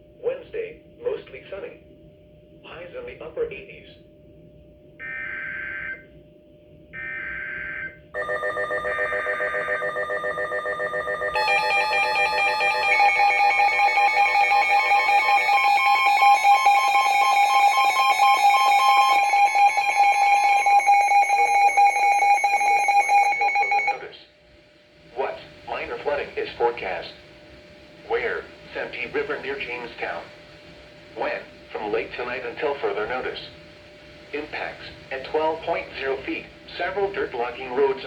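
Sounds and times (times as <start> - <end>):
pulsing electronic alarm beeps: 7.0 - 24.0.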